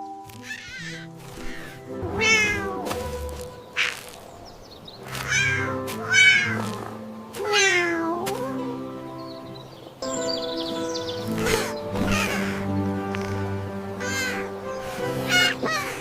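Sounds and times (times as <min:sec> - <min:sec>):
background music: 0:00.0 - 0:16.0
cat meowing: 0:00.4 - 0:02.8, 0:05.3 - 0:06.6, 0:07.4 - 0:08.3.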